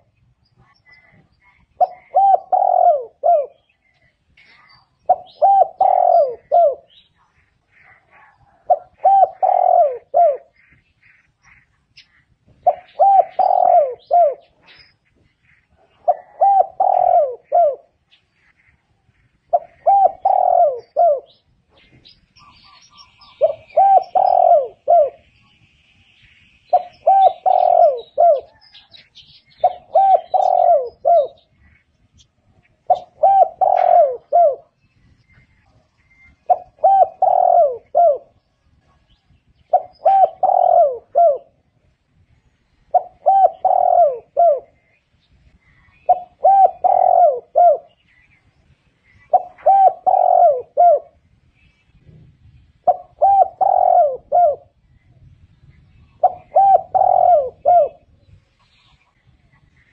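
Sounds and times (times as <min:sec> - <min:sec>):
dove cooing: 0:00.0 - 0:11.6, 0:12.2 - 0:18.6, 0:19.3 - 0:25.3, 0:26.7 - 0:31.8, 0:32.6 - 0:34.8, 0:35.6 - 0:42.0, 0:42.9 - 0:45.0, 0:45.6 - 0:48.2, 0:49.1 - 0:51.2, 0:52.8 - 0:54.9, 0:56.1 - 0:59.2.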